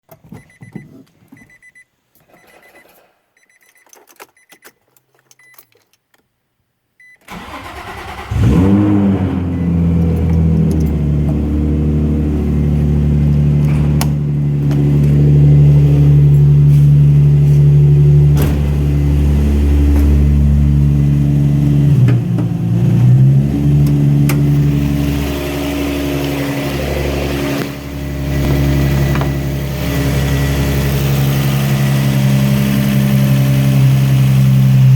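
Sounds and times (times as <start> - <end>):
faint clicks and beeps: 1.4 - 5.8
car engine starting and idling: 7.2 - 34.9.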